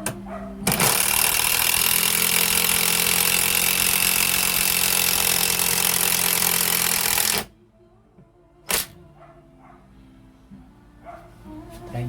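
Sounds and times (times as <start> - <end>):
impact wrench running: 0.7 - 7.5.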